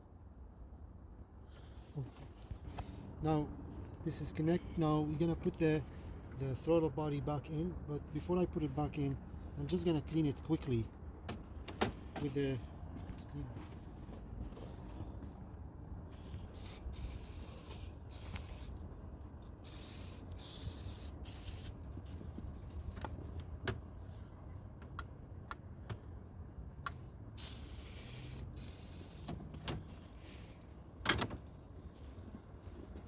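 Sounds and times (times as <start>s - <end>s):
aerosol can spraying: 16.6s - 18.8s, 19.6s - 21.8s, 27.4s - 29.4s.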